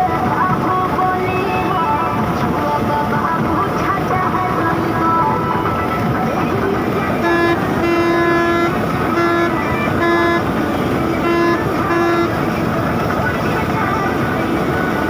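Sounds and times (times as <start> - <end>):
combine harvester running: 0.0 - 15.0
horn toots: 7.2 - 10.6, 11.2 - 12.4.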